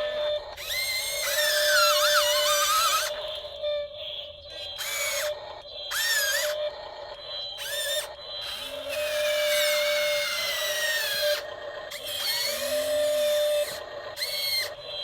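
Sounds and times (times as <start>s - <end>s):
small electric motors whining: 0.0s - 15.0s.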